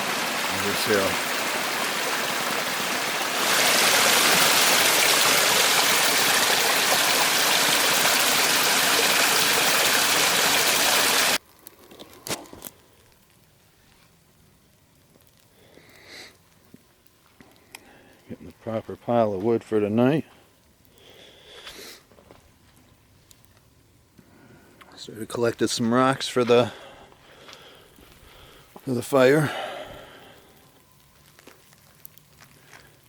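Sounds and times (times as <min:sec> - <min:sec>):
flowing water rushing: 0:00.0 - 0:11.4.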